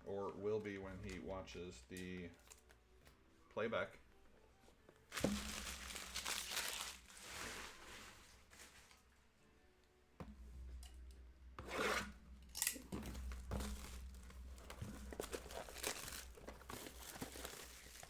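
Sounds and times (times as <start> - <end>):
plastic wrapping tearing and crinkling: 2.4 - 2.8, 5.1 - 9.0, 12.5 - 18.0
handling clicks and rustles: 12.4 - 18.0.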